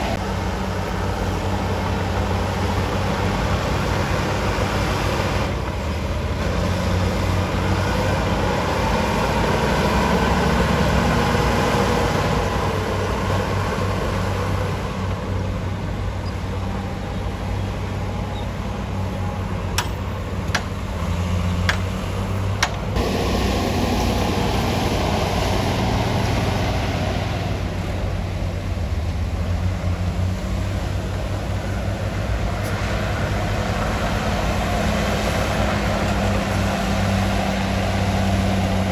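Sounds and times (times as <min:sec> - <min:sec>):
bulldozer diesel engine: 0:00.0 - 0:38.9
sharp clicks or knocks: 0:19.8 - 0:20.8, 0:21.6 - 0:22.0, 0:22.6 - 0:23.0.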